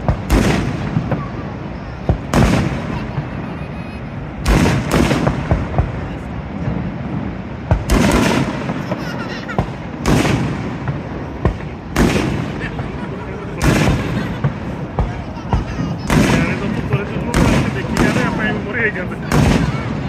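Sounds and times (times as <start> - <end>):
fireworks booming: 0.0 - 20.0
rumbling echo: 0.0 - 20.0.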